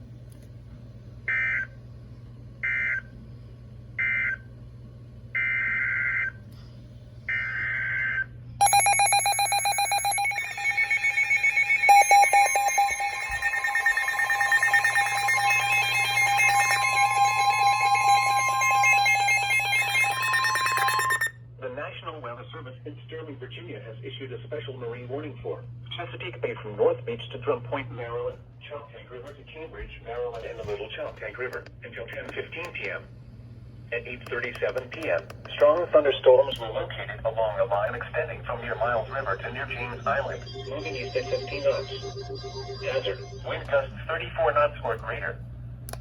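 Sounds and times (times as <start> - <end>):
pulsing alert tone: 8.6 - 21.3, 39.8 - 43.5
screeching digital data bursts: 8.6 - 21.3, 38.9 - 43.6.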